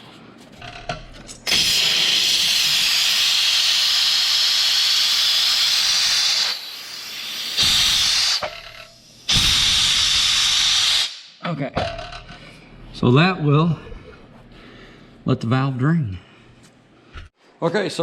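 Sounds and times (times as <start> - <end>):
compressed air hissing from valve: 1.4 - 11.4.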